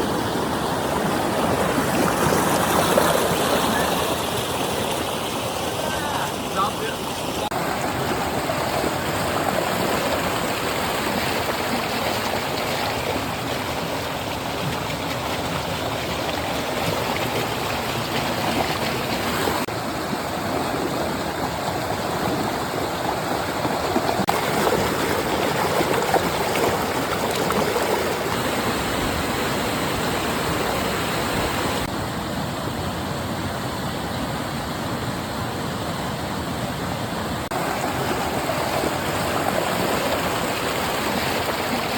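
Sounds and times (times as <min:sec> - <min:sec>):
stream water flowing: 0:00.0 - 0:41.9.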